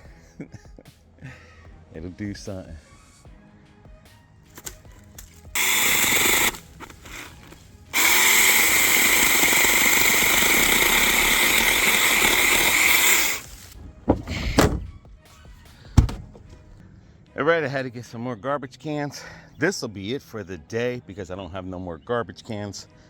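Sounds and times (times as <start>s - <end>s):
battery saw cutting branches: 4.5s - 15.0s.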